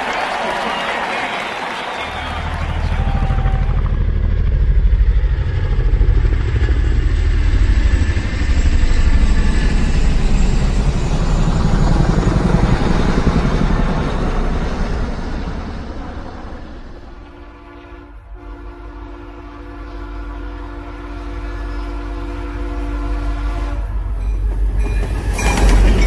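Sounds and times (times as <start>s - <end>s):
engine rumbling: 2.1s - 18.8s.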